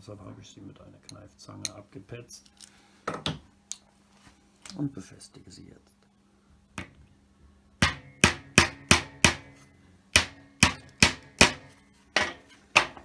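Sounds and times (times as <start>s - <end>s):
hammer tapping nails into wood: 7.8s - 9.5s, 10.2s - 13.0s.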